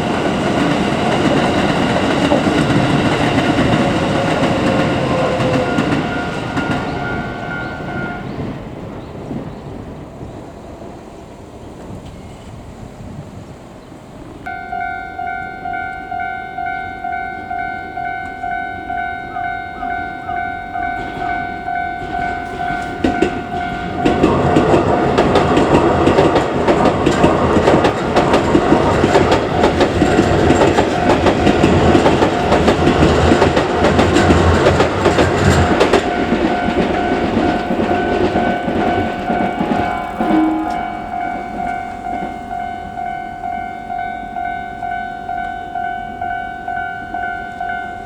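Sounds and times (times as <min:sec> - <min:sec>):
crossing warning bell: 0:00.0 - 0:08.6, 0:14.4 - 0:48.0
train wheels clattering: 0:00.0 - 0:09.9, 0:20.3 - 0:43.2.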